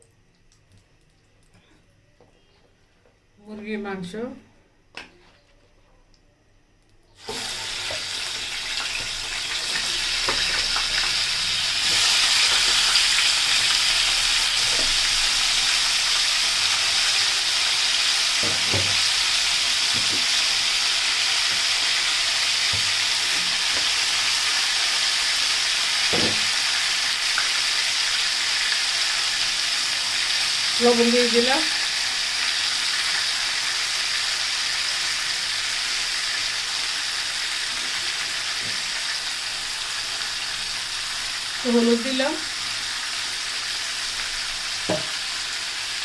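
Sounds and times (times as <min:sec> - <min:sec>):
chicken frying in oil: 0:07.2 - 0:46.0
spoon knocking in pan: 0:44.9 - 0:45.2.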